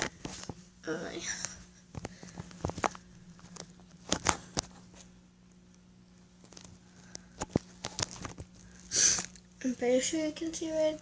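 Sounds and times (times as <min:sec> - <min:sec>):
faint steady hum: 0:00.0 - 0:11.0.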